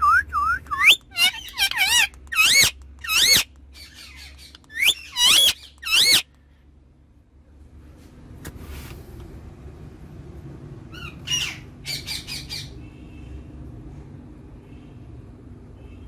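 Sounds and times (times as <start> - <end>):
parrot squawking: 0.0 - 6.3.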